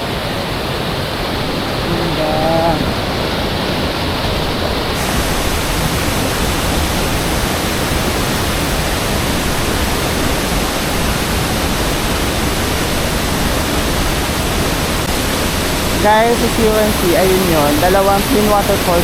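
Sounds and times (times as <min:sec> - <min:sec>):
waterfall roar: 0:00.0 - 0:19.0.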